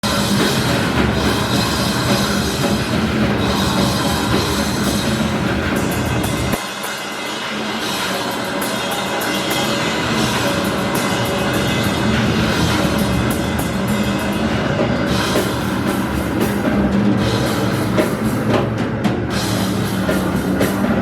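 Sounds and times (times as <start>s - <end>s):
live rock band playing: 0.0s - 21.0s.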